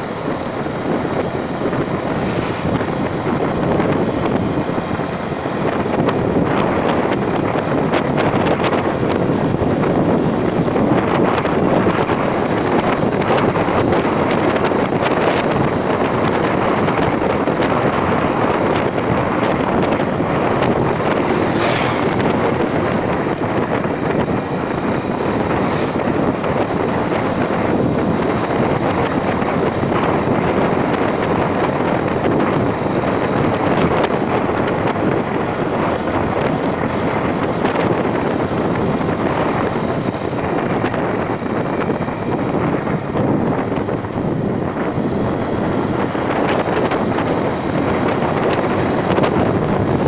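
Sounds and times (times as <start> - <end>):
wind buffeting microphone: 0.0 - 50.0
sharp hisses: 2.1 - 2.8, 21.2 - 22.2.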